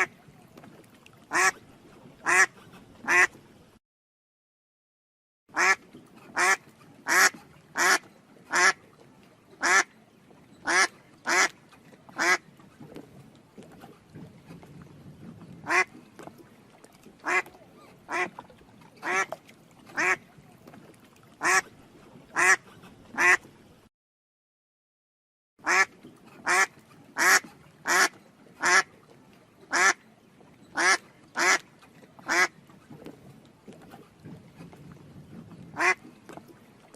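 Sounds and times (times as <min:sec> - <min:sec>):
duck quacking: 0:01.3 - 0:01.6, 0:02.2 - 0:03.3, 0:05.6 - 0:05.8, 0:06.4 - 0:08.8, 0:09.6 - 0:09.9, 0:10.6 - 0:11.5, 0:12.2 - 0:12.4, 0:15.7 - 0:15.9, 0:18.1 - 0:18.3, 0:19.0 - 0:19.3, 0:20.0 - 0:20.2, 0:21.4 - 0:21.7, 0:22.4 - 0:22.6, 0:23.2 - 0:23.4, 0:25.6 - 0:28.9, 0:29.7 - 0:30.0, 0:30.8 - 0:31.6, 0:32.3 - 0:32.5, 0:35.8 - 0:36.0.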